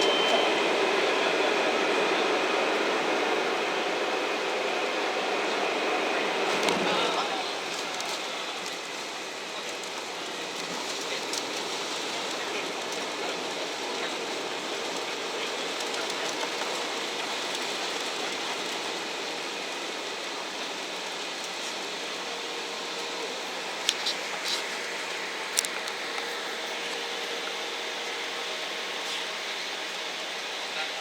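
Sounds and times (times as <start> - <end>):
jet cabin rushing noise: 0.0 - 20.0.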